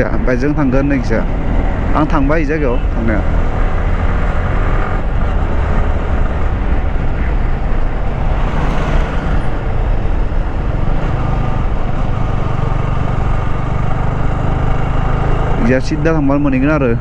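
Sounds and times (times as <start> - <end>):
wind rushing over microphone: 0.0 - 15.6
motorcycle engine running: 2.8 - 16.0.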